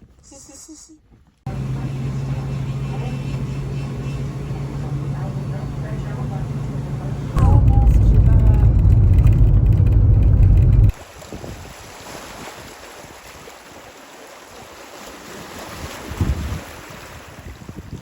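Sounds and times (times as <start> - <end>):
loud low wind rumble: 1.5 - 11.0
wind rushing: 7.4 - 11.0.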